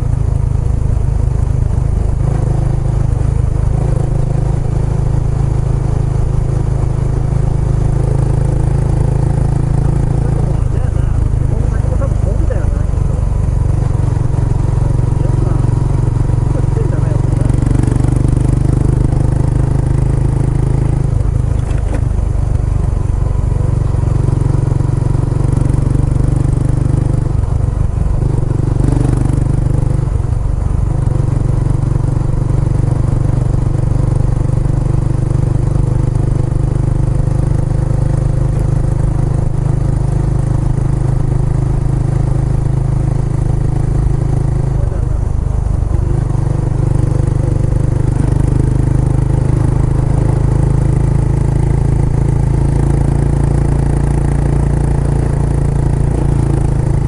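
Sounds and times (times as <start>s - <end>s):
motorcycle engine exhaust note: 0.0s - 57.0s.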